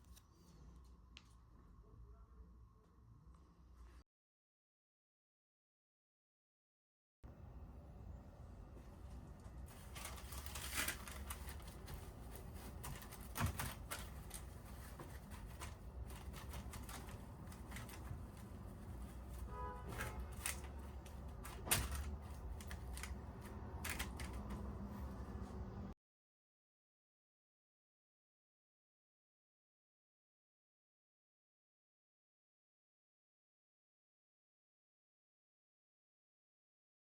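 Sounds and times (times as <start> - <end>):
objects being handled: 9.2 - 25.9.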